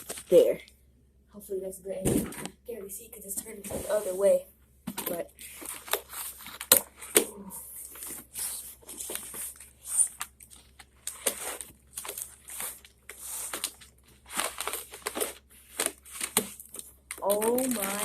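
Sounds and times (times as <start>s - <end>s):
packaging rustling and crinkling: 0.0s - 0.6s, 5.0s - 18.0s.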